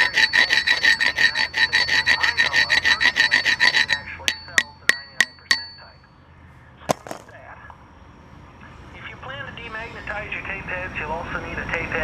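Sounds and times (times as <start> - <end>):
scraping on steel plate: 0.0 - 5.9
ringing metallic taps: 0.0 - 6.1.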